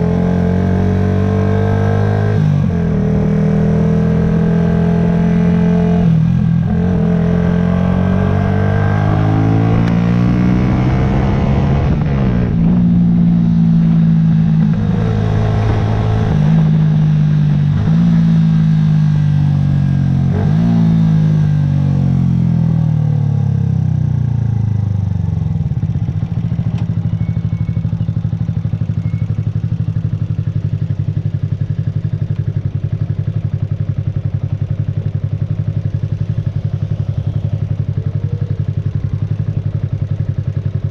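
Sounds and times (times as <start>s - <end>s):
motorcycle engine revving: 0.0s - 40.9s
motorcycle engine idling: 21.8s - 40.9s.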